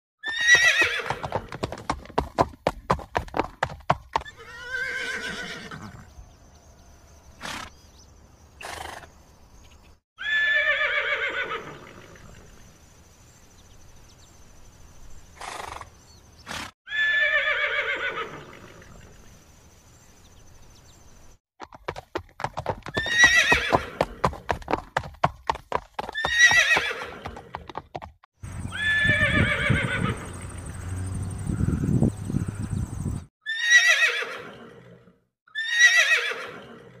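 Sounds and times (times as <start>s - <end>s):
horse neighing: 0.2s - 1.6s, 4.2s - 6.1s, 10.2s - 12.4s, 16.6s - 19.0s, 22.9s - 24.3s, 26.1s - 27.6s, 28.7s - 30.4s, 33.4s - 37.0s
galloping hooves clip-clop: 0.8s - 4.4s, 21.6s - 28.2s.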